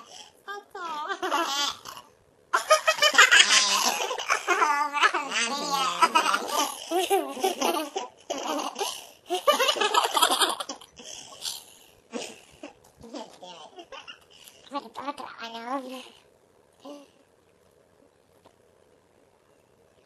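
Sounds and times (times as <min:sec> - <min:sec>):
girls giggling: 0:02.6 - 0:11.5.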